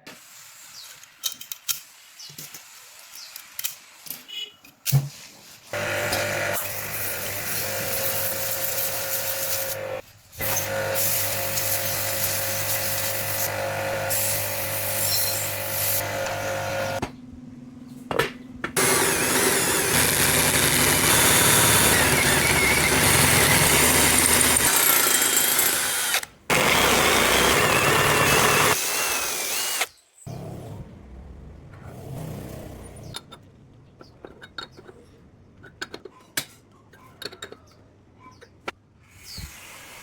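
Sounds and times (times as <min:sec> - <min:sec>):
harsh grinding or cutting: 0:05.7 - 0:17.0, 0:18.8 - 0:30.0
power tool motor whine: 0:05.8 - 0:17.0, 0:18.8 - 0:29.9.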